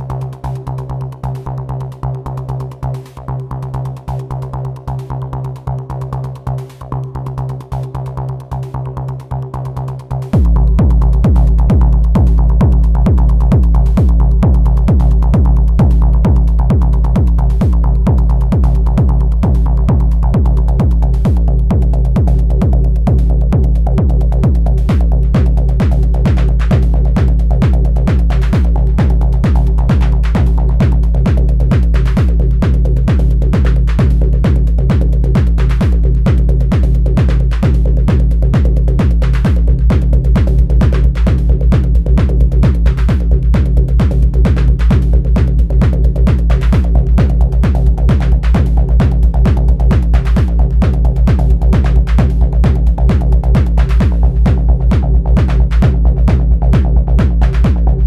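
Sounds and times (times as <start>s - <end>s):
loud kick drum beat: 10.1s - 58.0s
held bass tone: 10.3s - 58.0s.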